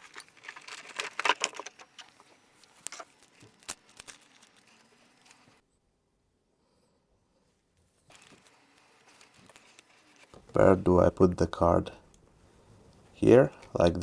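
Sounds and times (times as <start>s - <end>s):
packaging rustling and clicking: 0.0s - 5.6s.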